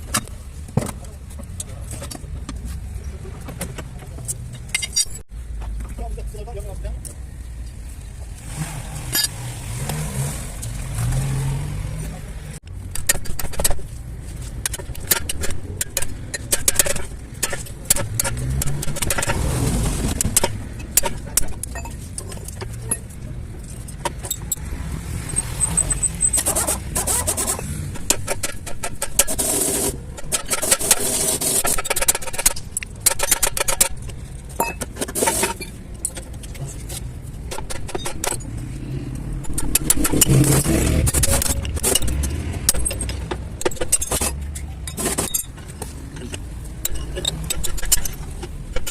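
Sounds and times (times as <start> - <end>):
metal tools clinking: 4.3 - 5.3, 20.3 - 24.7, 25.3 - 38.6, 39.4 - 48.9.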